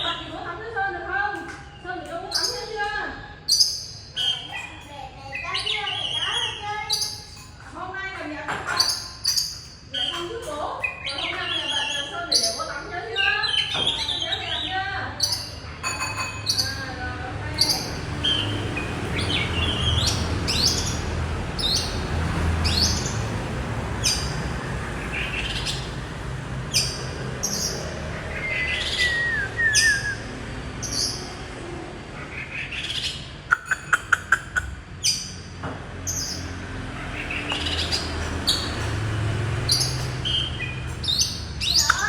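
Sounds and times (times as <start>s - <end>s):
birds chirping: 0.0s - 42.0s
falling whistle: 29.0s - 30.2s.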